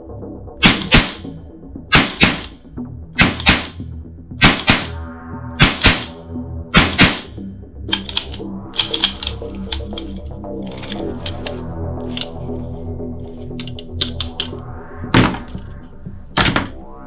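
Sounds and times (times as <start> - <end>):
quick clicks: 7.9 - 10.1, 13.6 - 14.6.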